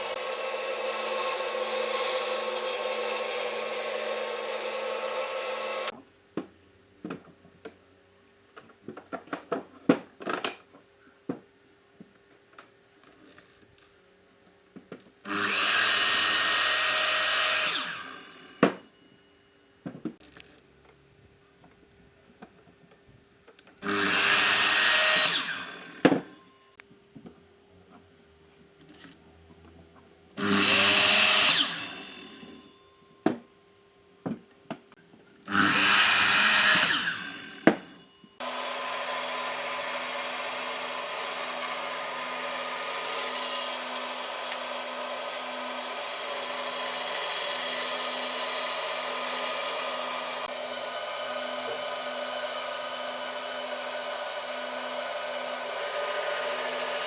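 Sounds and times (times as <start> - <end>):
power tool cutting wood: 0.0 - 6.0, 15.3 - 18.8, 23.8 - 26.4, 30.4 - 32.8, 35.5 - 57.0
power tool humming steadily: 0.0 - 6.0, 15.3 - 19.1, 23.8 - 26.8, 30.4 - 33.0, 35.4 - 57.0.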